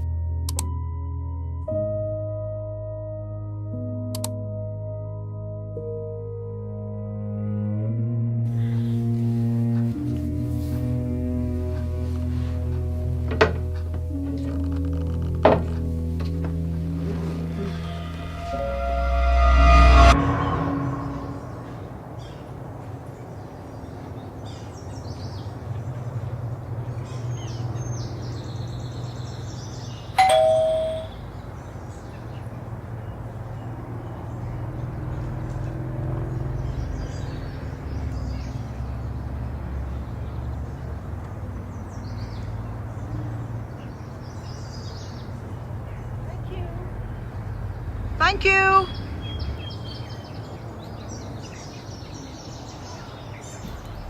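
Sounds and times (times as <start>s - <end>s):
short bell ding: 30.2s - 31.2s.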